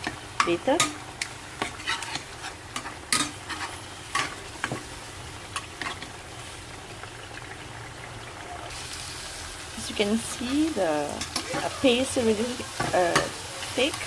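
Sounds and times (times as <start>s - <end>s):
frying sizzle: 0.0s - 14.0s
spatula scraping a pan: 1.6s - 4.8s.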